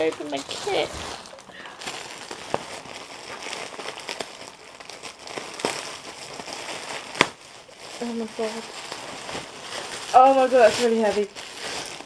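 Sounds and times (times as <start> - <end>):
packaging crinkling and rustling: 0.0 - 12.0.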